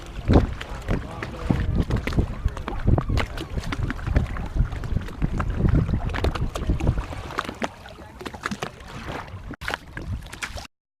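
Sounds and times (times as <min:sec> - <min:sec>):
wind on microphone: 0:00.0 - 0:10.6
water splashing: 0:00.0 - 0:10.7
boat knocking: 0:00.1 - 0:08.8.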